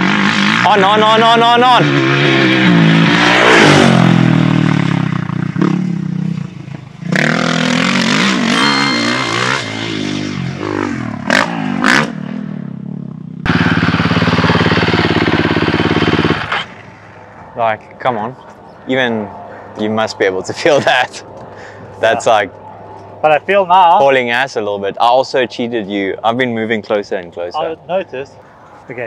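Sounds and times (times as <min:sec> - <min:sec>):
dirt bike engine revving: 0:00.0 - 0:17.6.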